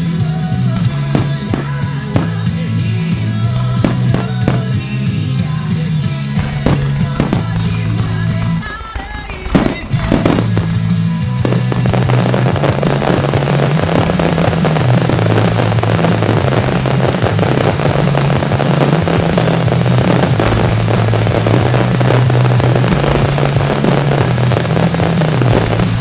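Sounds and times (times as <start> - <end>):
fireworks crackling and popping: 0.0 - 26.0.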